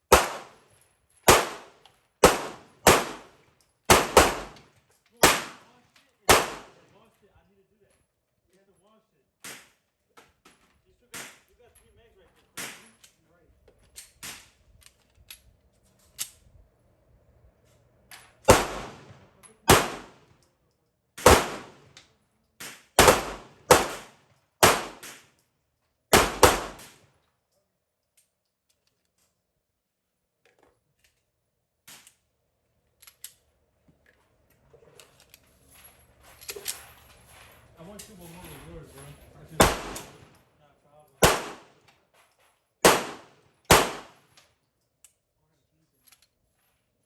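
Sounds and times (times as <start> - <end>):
faint gunshots: 0.1 - 0.6, 3.9 - 4.6, 5.2 - 5.7, 6.3 - 6.8, 18.5 - 20.2, 21.2 - 21.9, 23.0 - 25.2, 26.1 - 27.0, 39.6 - 40.3, 41.2 - 41.8, 42.8 - 44.3
pistol shots: 0.1 - 0.6, 1.3 - 3.3, 3.9 - 4.6, 5.2 - 5.7, 6.3 - 6.8, 18.5 - 20.2, 21.2 - 21.9, 22.6 - 25.2, 26.1 - 27.0, 39.6 - 40.3, 41.2 - 41.8, 42.8 - 44.3.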